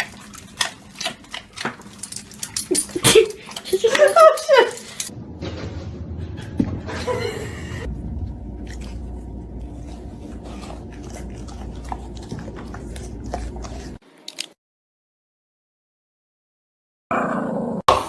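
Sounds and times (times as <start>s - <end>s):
dog chewing food: 0.0s - 3.8s, 8.3s - 14.0s.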